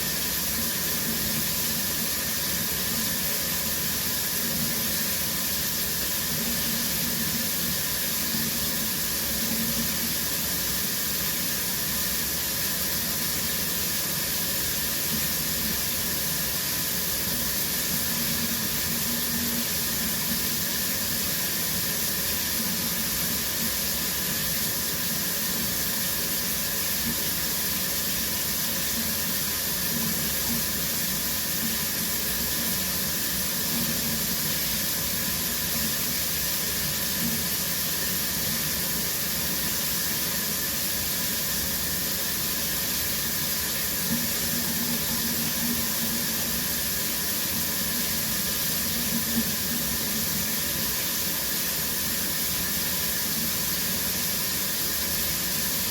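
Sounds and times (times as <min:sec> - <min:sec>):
shower spray hissing: 0:00.0 - 0:55.9.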